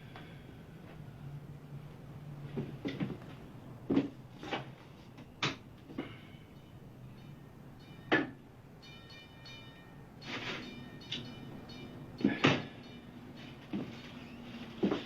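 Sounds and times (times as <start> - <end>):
faint ringing tone: 6.0 - 15.0.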